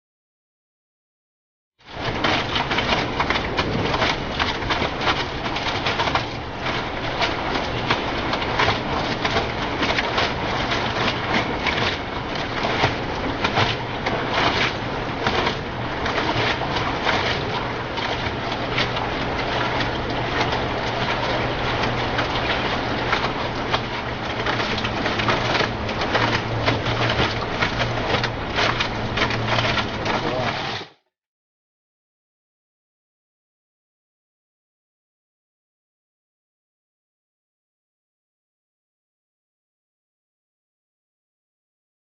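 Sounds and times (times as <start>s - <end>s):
washing machine thumping and rattling: 1.9s - 30.8s.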